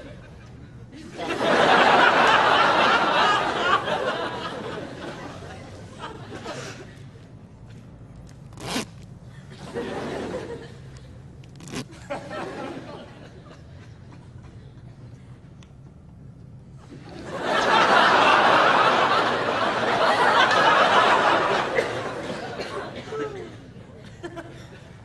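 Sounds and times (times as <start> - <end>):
studio audience laughing: 0.0 - 6.8, 17.0 - 23.2.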